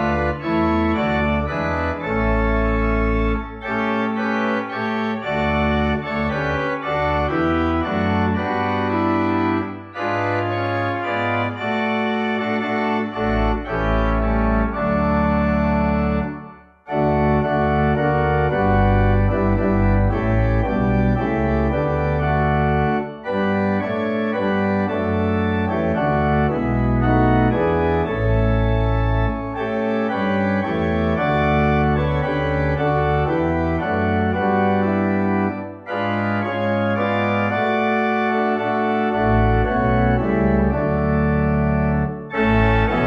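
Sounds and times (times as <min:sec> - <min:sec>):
organ playing sustained chords: 0:00.0 - 0:43.0.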